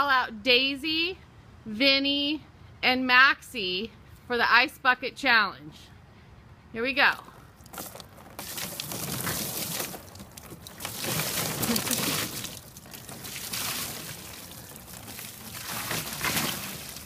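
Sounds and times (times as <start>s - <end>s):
water pouring and splashing: 7.6s - 17.0s.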